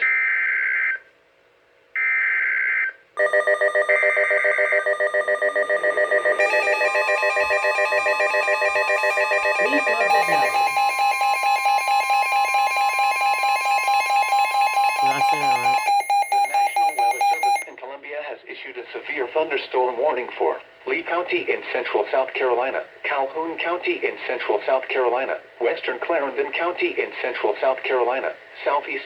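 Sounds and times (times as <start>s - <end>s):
pulsing electronic alarm tones: 2.0s - 17.7s.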